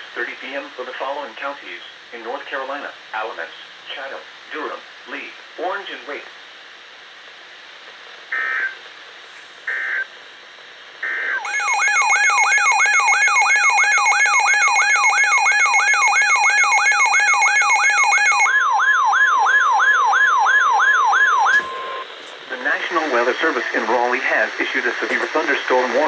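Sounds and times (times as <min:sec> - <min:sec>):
digital data bursts: 0:11.0 - 0:18.5
warbling alert tone: 0:11.4 - 0:18.5.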